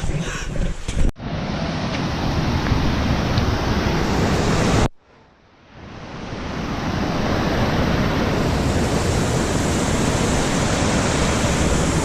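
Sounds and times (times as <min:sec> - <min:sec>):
waterfall rushing: 0:06.6 - 0:12.0.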